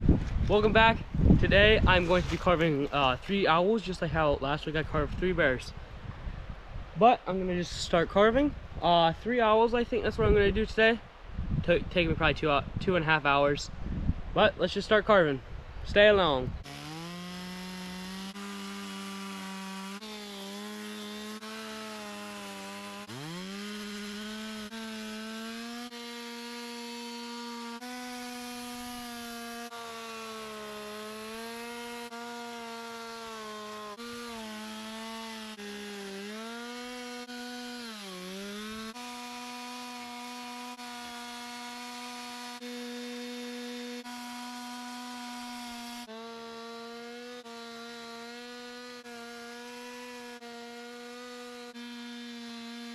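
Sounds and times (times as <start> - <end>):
chainsaw cutting wood: 1.8 - 3.9, 16.0 - 52.9.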